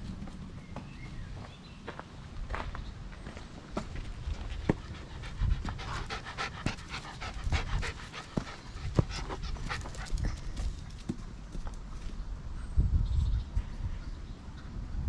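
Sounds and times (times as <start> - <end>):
dog panting: 4.3 - 10.8.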